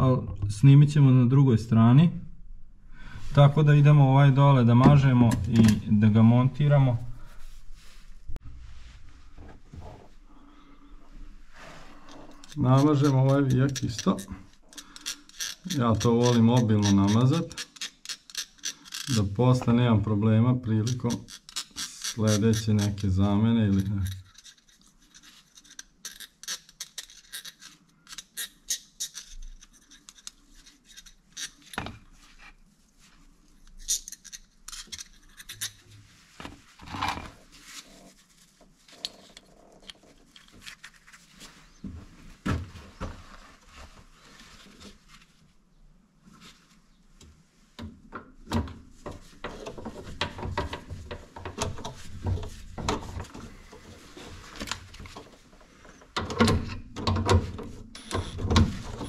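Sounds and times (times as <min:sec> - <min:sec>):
metal rubbing and scraping: 0:11.4 - 0:19.7, 0:33.6 - 0:41.8.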